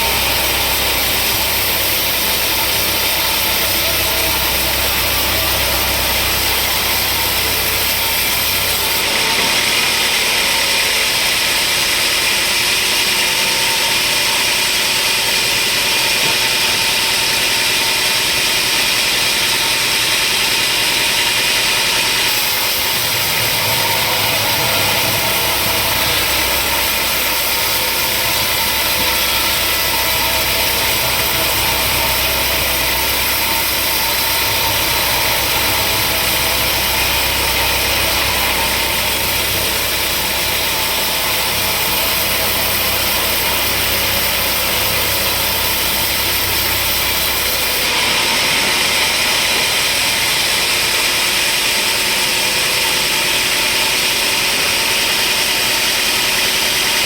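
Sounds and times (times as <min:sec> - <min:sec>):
sawmill machinery drone: 0:00.0 - 0:57.0
high hiss: 0:22.3 - 0:47.8.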